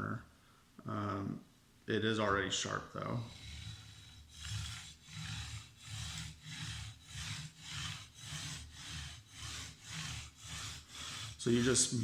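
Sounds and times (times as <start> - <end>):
knife scraping on whetstone: 3.2 - 12.0.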